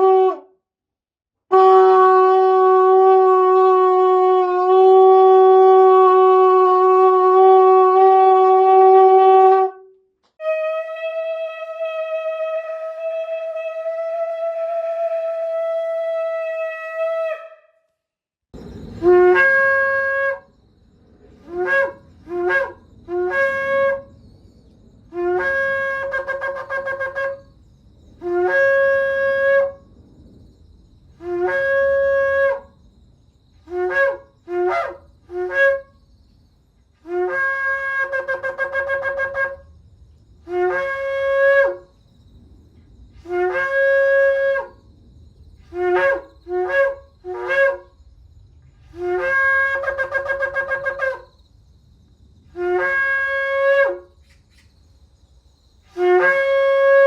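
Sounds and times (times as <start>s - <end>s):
shofar blasts: 0.0s - 0.5s, 1.5s - 17.8s, 19.0s - 20.5s, 21.4s - 24.1s, 25.1s - 27.5s, 28.2s - 29.9s, 31.2s - 32.8s, 33.6s - 36.0s, 37.0s - 39.8s, 40.4s - 42.0s, 43.2s - 44.8s, 45.6s - 48.0s, 48.8s - 51.3s, 52.5s - 54.2s, 55.8s - 57.0s.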